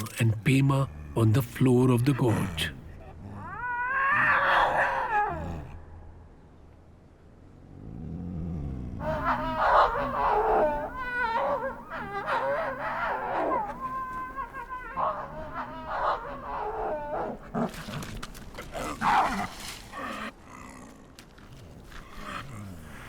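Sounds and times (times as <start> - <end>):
snow leopards wailing calls: 9.0 - 18.1.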